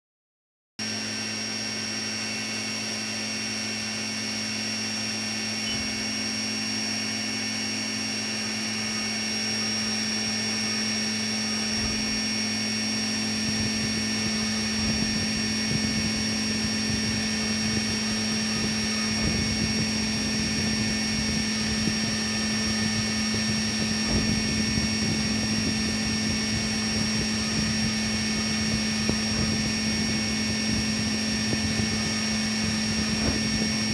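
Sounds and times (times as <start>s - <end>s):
milling machine whining: 0.8s - 33.9s
cutter crackling on metal: 8.2s - 33.9s.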